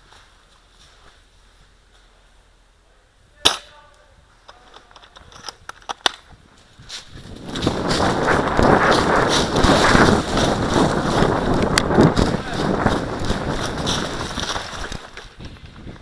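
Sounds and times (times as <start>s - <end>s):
loud rushing noise: 7.6s - 14.3s.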